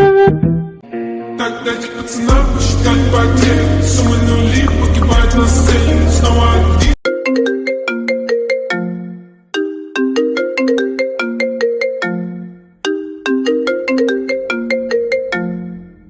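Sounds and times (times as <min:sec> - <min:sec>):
phone ringtone melody: 0:07.0 - 0:16.0.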